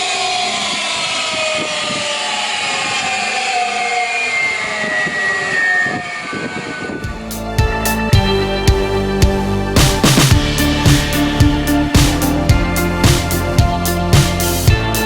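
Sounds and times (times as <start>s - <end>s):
saw whine winding down: 0.0s - 15.0s
music with drum beat: 7.1s - 15.0s.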